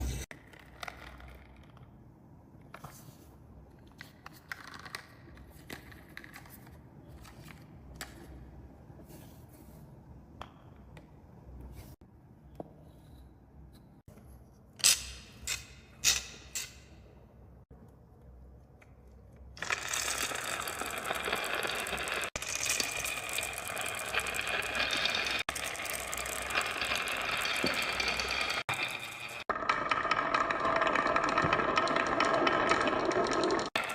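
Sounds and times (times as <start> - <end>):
marbles rattling down wooden run: 19.6 - 33.9.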